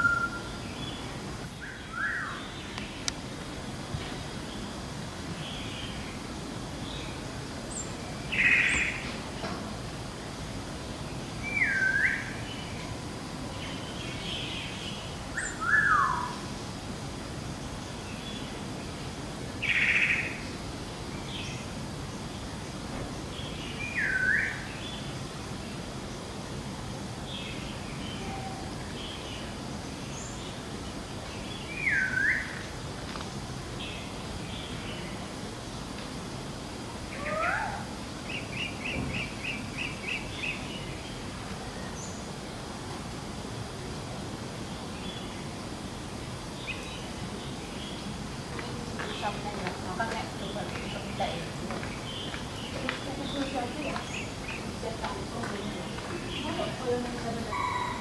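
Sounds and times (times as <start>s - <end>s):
faint bird chirps: 0.0s - 1.0s
birds calling: 0.0s - 6.2s, 13.6s - 16.4s, 46.5s - 58.0s.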